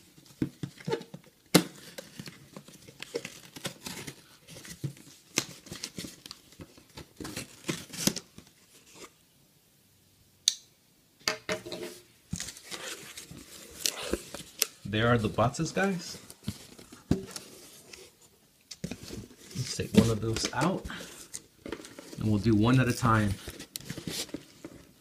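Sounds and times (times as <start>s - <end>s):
cardboard tearing: 12.4s - 14.7s.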